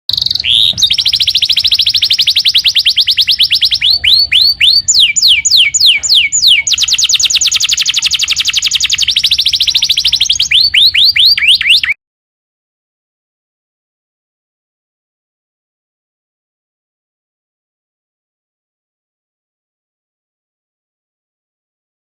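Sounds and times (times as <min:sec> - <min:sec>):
songbird singing trills: 0:00.1 - 0:12.0.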